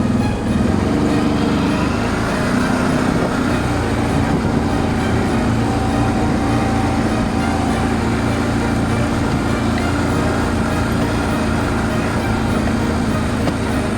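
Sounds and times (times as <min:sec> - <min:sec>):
quad bike engine running: 0:00.0 - 0:13.9.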